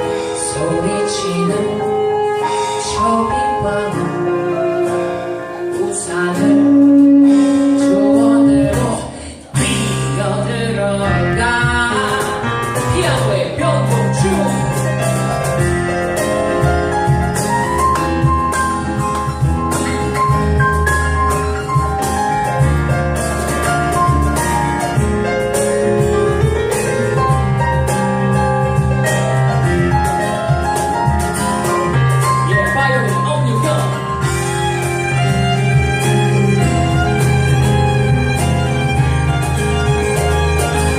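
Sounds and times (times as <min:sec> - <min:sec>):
piano solo: 0:00.0 - 0:40.9
bass and drums: 0:04.8 - 0:40.9
person calling out a name: 0:32.4 - 0:34.2.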